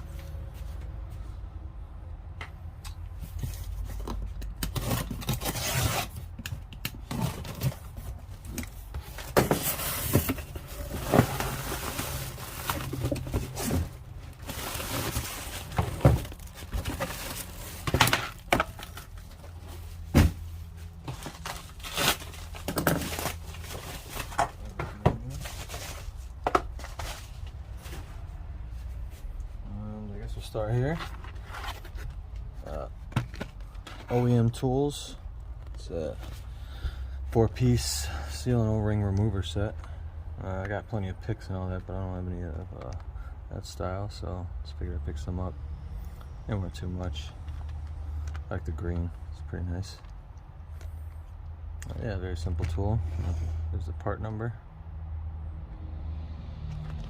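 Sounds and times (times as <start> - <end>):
packaging tearing and crinkling: 21.2 - 24.4.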